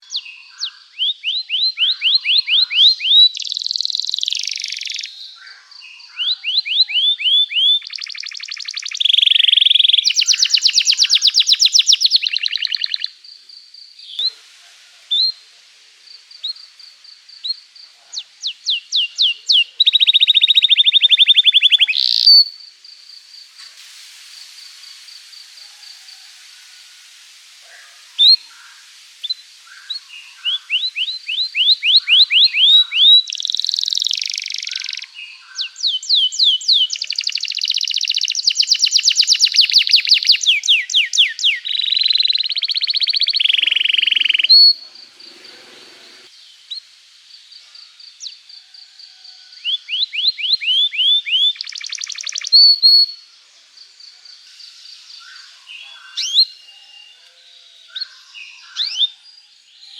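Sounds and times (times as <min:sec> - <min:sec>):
canary singing: 0:00.0 - 0:13.2, 0:17.4 - 0:22.6, 0:29.3 - 0:46.3, 0:49.6 - 0:53.2, 0:55.2 - 0:59.2.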